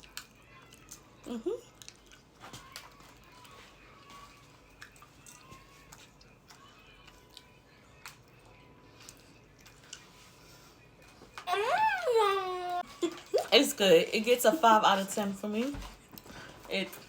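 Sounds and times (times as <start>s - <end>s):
faint chewing: 0.0s - 11.5s, 15.9s - 17.0s.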